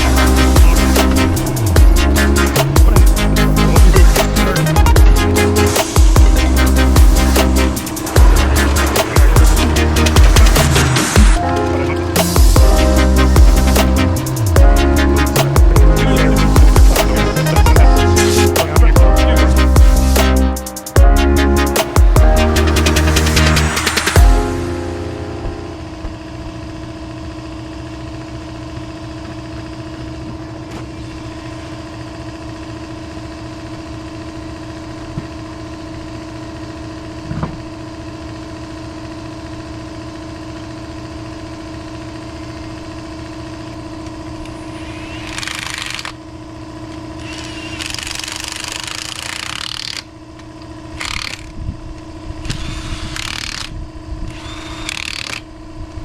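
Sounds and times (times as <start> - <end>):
hissing bursts: 0.0 - 24.2
engine running steadily: 0.0 - 56.0.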